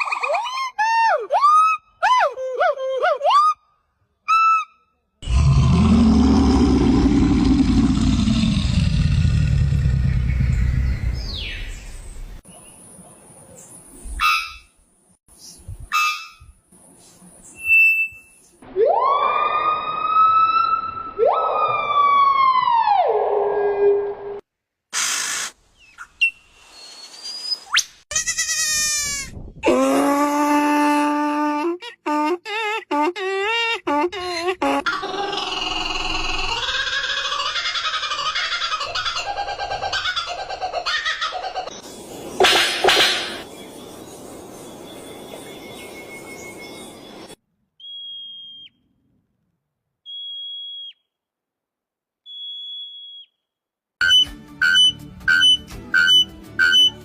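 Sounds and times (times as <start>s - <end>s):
burst of hiss: 24.9s - 25.6s
high whistled notes: 54.0s - 57.0s.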